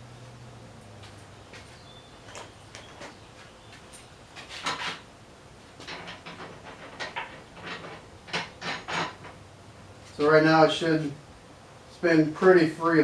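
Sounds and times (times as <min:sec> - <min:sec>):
light metal clicks and clatter: 0:05.8 - 0:09.4.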